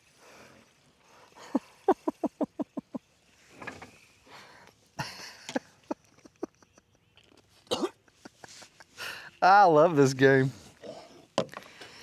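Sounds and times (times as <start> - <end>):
man laughing: 1.4 - 3.0, 5.0 - 7.0.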